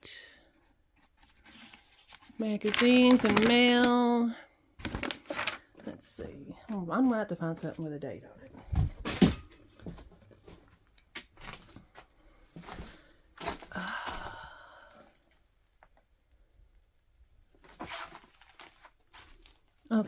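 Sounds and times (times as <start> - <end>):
old paper rustling and crinkling: 1.0 - 4.2, 4.8 - 6.3, 9.8 - 13.9, 17.5 - 20.0.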